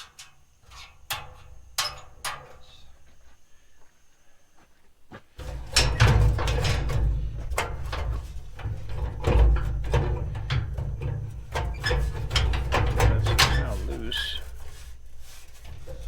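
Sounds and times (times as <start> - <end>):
metal grill parts rattling: 5.4 - 16.0.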